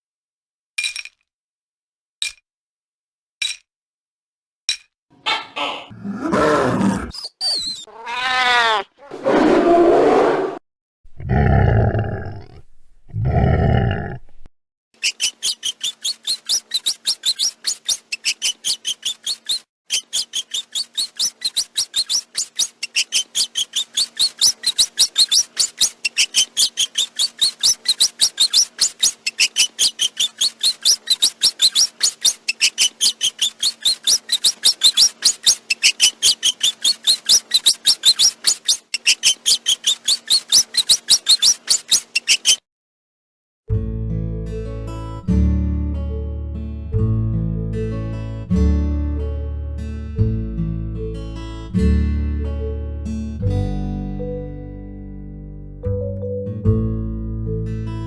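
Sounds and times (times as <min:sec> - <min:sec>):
rat high-pitched squeaks: 0:05.2 - 0:08.9, 0:15.0 - 0:42.6
rat harsh calls: 0:05.2 - 0:10.2, 0:15.0 - 0:42.6.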